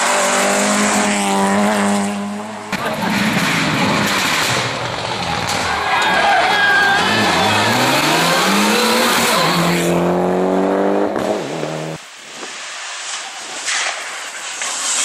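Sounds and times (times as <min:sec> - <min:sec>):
rally car engine revving: 0:00.0 - 0:12.0.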